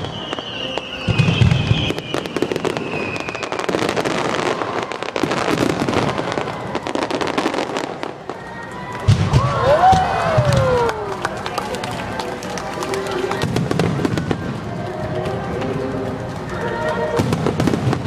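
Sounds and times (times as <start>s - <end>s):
fireworks crackling and popping: 0.0s - 18.0s.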